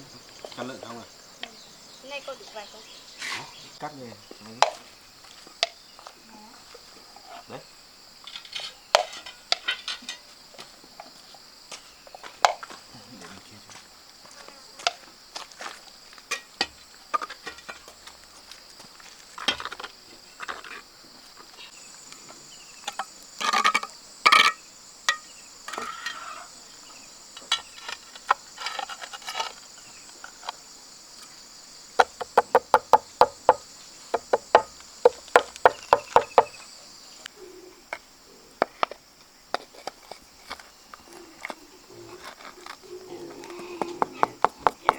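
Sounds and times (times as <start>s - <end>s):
insects chirring: 0.0s - 44.9s
knocks: 32.0s - 36.6s.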